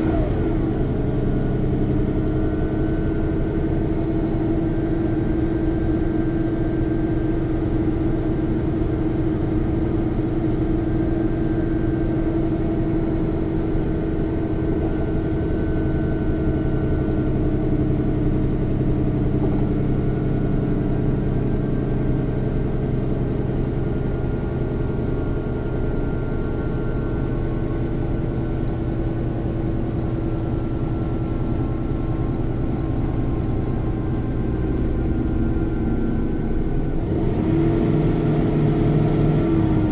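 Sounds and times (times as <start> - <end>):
bus diesel engine running: 0.0 - 39.9
faint axle whine: 0.0 - 39.9.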